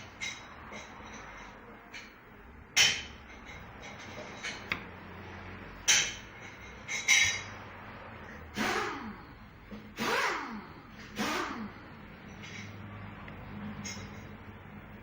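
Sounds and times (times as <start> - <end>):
metallic clicks of parts: 12.3 - 14.4.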